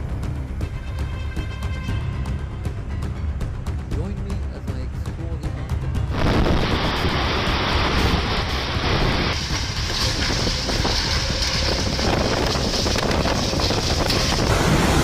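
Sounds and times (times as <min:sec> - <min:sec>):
wind buffeting microphone: 0:06.1 - 0:15.0.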